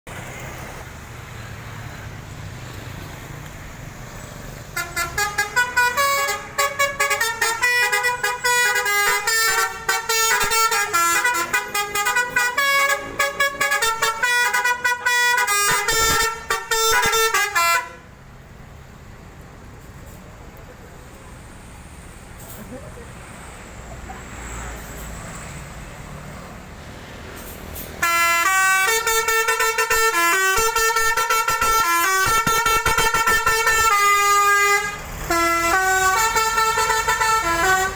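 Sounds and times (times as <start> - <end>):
musical bus horn melody: 4.7 - 18.2, 28.0 - 37.9.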